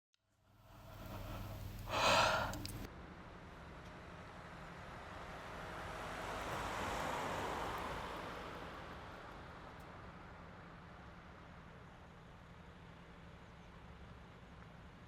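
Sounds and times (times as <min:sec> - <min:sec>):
person yawning: 0:00.9 - 0:02.8.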